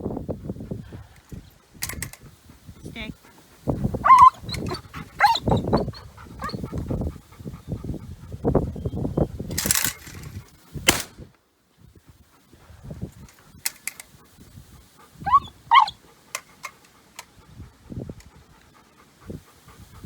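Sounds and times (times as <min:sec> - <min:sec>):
dog whining: 0:03.9 - 0:06.9, 0:15.2 - 0:16.0
rustling noise: 0:09.4 - 0:18.5
sharp clicks: 0:13.3 - 0:14.2, 0:16.3 - 0:17.3.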